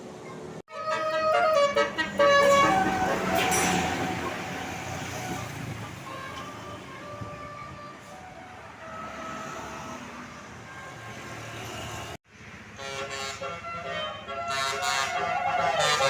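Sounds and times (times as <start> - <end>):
road noise: 0.0 - 16.0
musical air horn tune: 0.7 - 9.6, 12.8 - 16.0.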